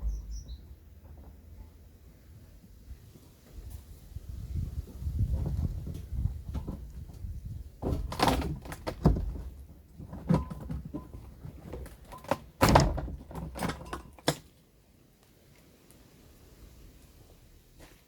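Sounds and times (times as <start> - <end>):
metal knocking and clanking: 7.8 - 14.4.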